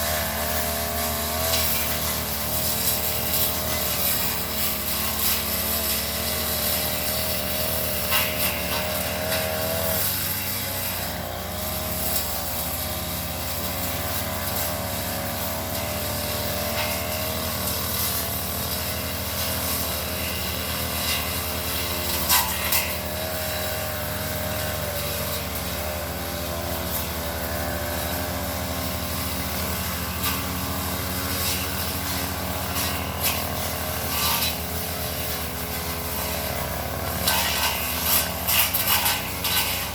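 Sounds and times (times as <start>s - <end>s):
brush cutter engine running: 0.0s - 39.9s.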